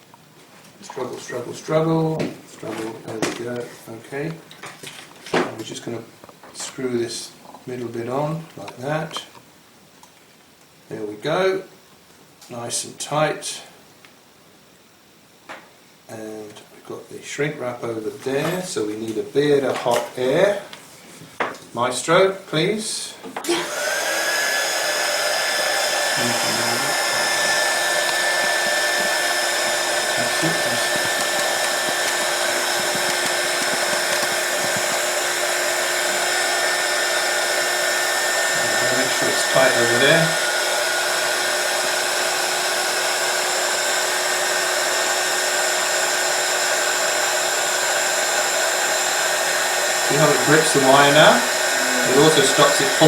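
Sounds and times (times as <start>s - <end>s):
fan whine: 23.4s - 53.0s
hot-air gun blowing: 23.4s - 53.0s.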